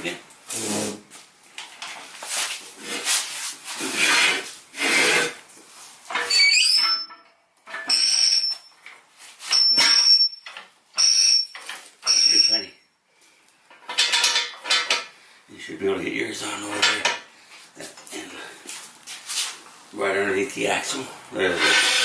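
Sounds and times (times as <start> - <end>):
sharp high squeak: 6.2 - 7.2, 7.8 - 8.8, 9.4 - 12.8
jack handle strokes: 21.5 - 22.0.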